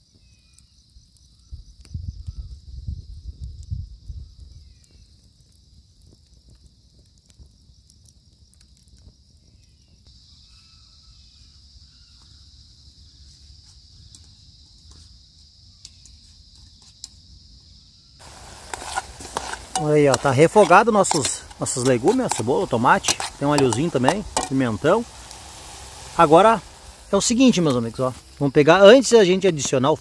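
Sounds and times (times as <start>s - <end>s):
night insects trilling: 0.0s - 30.0s
vegetables sizzling in a pan: 18.2s - 30.0s.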